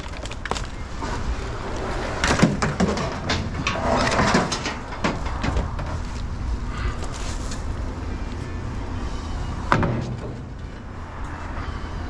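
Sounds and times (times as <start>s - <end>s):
scrap metal knocking and clattering: 0.0s - 7.8s
scraping rush: 0.0s - 12.0s.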